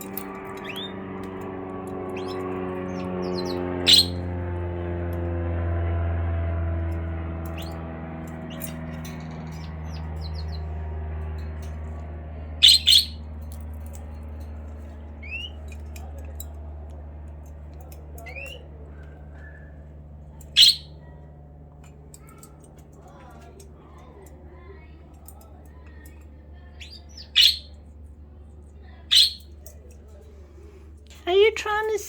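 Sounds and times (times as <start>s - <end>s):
bird squawks: 0.0s - 1.0s, 2.2s - 4.3s, 7.5s - 7.8s, 12.6s - 13.3s, 20.4s - 21.2s, 26.6s - 27.8s, 29.0s - 29.6s
bird chirping: 0.0s - 1.4s, 2.1s - 4.3s, 7.5s - 10.8s, 12.6s - 13.3s, 15.2s - 15.8s, 20.4s - 21.1s, 26.7s - 27.9s, 29.1s - 29.6s
steady low hum: 0.0s - 32.0s.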